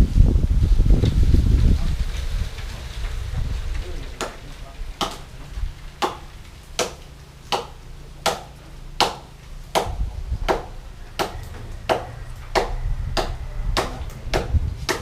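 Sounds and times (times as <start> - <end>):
low rumble: 0.0 - 6.8, 8.7 - 15.0
blade chopping wood: 5.0 - 5.3, 6.0 - 15.0.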